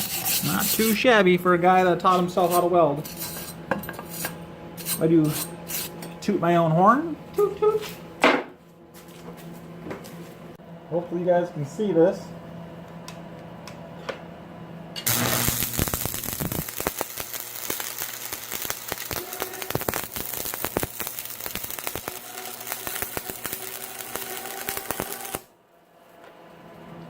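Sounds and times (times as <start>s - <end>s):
welding arc crackling: 15.0s - 25.5s.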